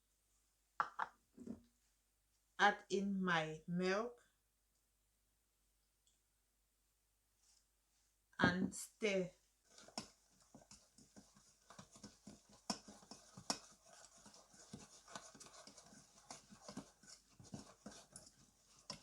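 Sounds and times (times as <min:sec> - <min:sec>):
utensil stirring in a pot: 0:09.4 - 0:19.0.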